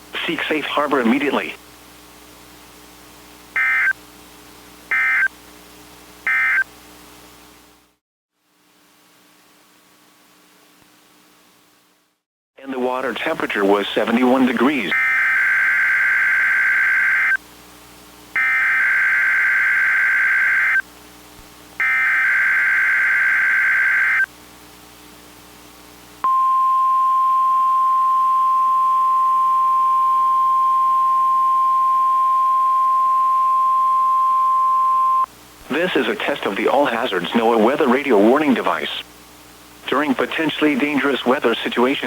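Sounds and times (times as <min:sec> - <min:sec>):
steady warning alarm tone: 0:04.9 - 0:05.3, 0:06.3 - 0:06.6, 0:14.7 - 0:17.4, 0:18.4 - 0:20.8, 0:21.8 - 0:24.3, 0:26.3 - 0:35.3
buzzy digital data tones: 0:14.4 - 0:17.4, 0:18.4 - 0:20.8, 0:21.8 - 0:24.3.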